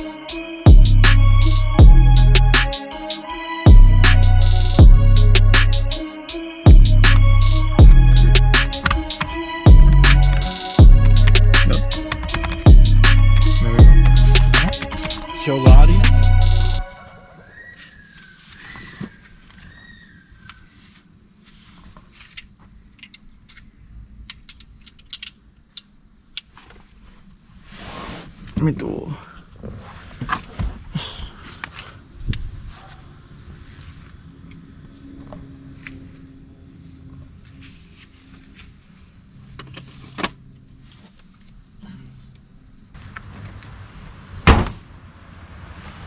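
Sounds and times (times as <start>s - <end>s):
crickets trilling: 17.4s - 46.0s
small clicks: 22.3s - 26.5s.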